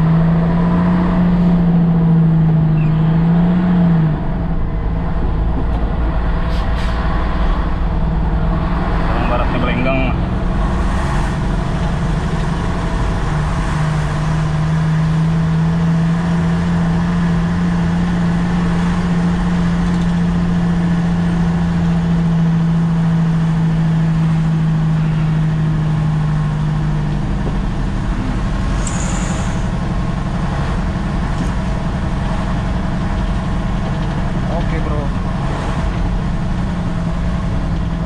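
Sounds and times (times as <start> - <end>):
diesel truck engine running: 0.0 - 38.0
brief high hiss: 28.7 - 29.8.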